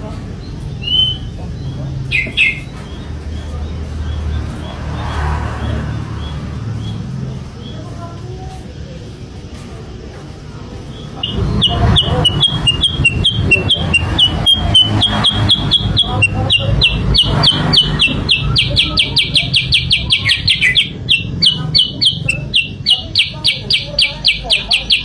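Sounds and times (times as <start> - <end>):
bird chirping rapidly: 0.3 - 8.0, 10.8 - 25.0.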